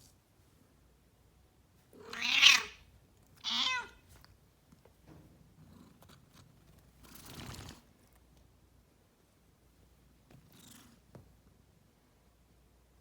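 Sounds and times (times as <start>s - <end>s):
cat meowing: 2.0s - 2.8s, 3.4s - 4.0s.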